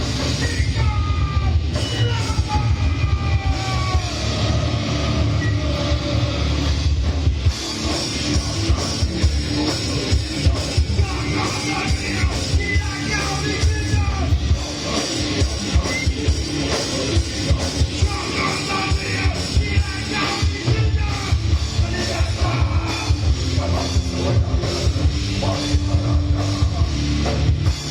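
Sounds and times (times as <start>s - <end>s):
live rock band playing: 0.0s - 27.9s
person singing or shouting: 0.3s - 6.2s, 7.9s - 23.8s.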